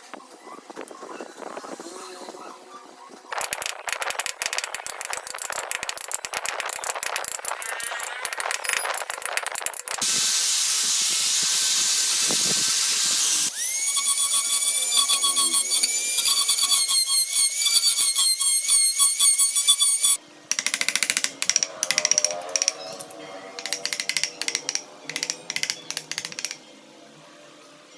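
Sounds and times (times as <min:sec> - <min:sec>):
wood carving tools scraping: 0:03.3 - 0:10.0, 0:13.2 - 0:23.0, 0:23.6 - 0:26.6
steady hiss: 0:10.0 - 0:13.5
power tool motor whine: 0:10.8 - 0:17.9.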